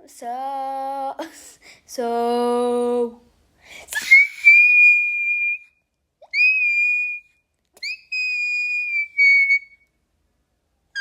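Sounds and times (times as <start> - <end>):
person singing high whistle-like notes: 4.0 - 9.8.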